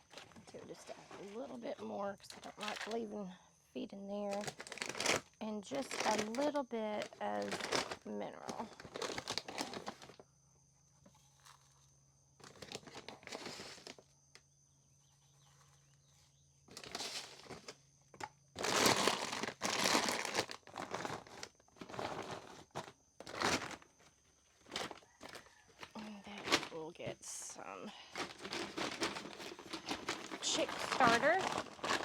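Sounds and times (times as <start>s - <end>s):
feed bag rustling: 0.0s - 3.1s, 4.2s - 10.2s, 12.4s - 14.0s, 16.7s - 17.9s, 18.6s - 32.0s.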